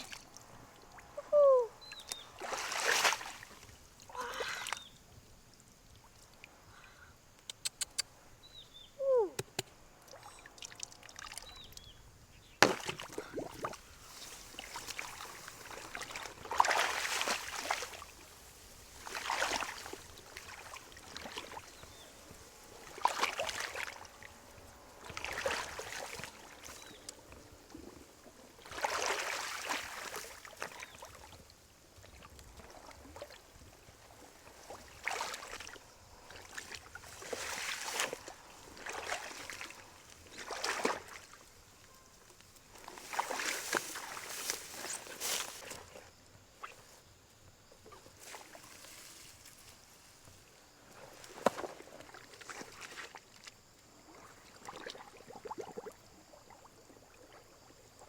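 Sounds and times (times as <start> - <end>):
water sloshing and splashing: 0.0 - 1.2, 1.9 - 5.0, 10.0 - 11.8, 12.6 - 41.8, 42.4 - 46.2, 47.8 - 58.0
sharp clicks: 7.4 - 8.1.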